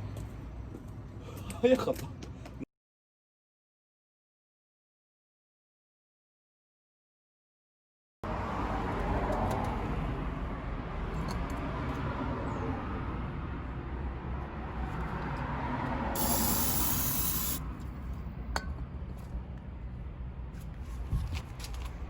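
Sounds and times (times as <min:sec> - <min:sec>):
loud spraying hiss: 0:16.2 - 0:17.6.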